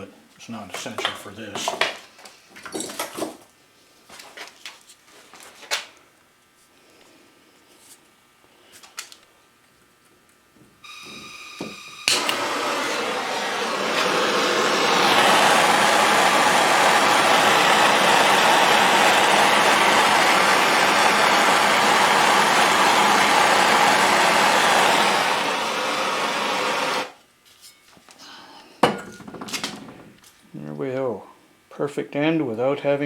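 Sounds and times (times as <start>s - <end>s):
brief whistle: 10.8s - 12.4s
heat gun rushing: 10.8s - 27.2s.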